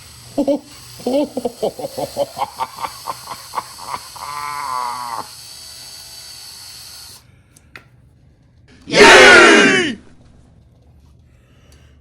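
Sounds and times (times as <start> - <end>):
power drill running in pulses: 0.0 - 7.2.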